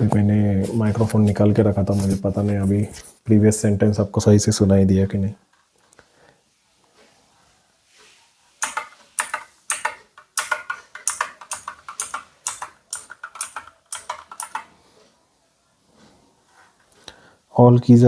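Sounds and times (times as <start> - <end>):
mechanical keyboard key clacks: 8.6 - 14.7.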